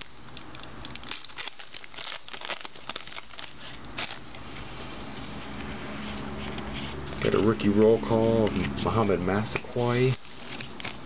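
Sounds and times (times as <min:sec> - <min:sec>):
cards rustling and flicking: 0:08.2 - 0:11.0.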